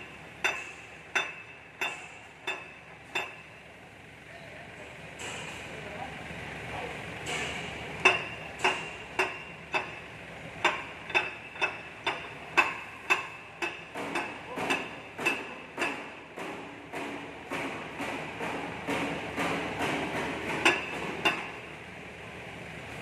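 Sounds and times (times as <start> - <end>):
hammer striking steel: 0.4 - 3.5, 7.3 - 21.8.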